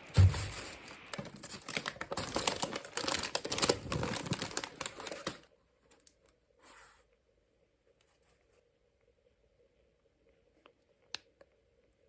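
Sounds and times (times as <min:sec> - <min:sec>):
small objects clicking and crinkling: 0:00.2 - 0:06.4.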